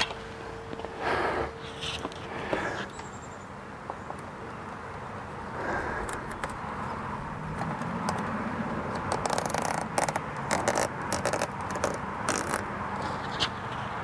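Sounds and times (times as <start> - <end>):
scraping and rattling on door screen: 7.3 - 13.3.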